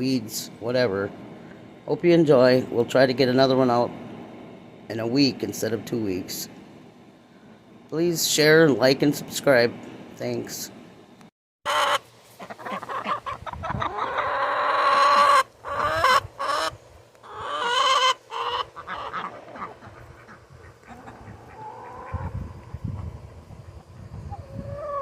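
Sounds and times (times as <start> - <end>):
poultry calling: 11.7 - 22.4, 23.7 - 25.0
hen clucking: 11.7 - 25.0.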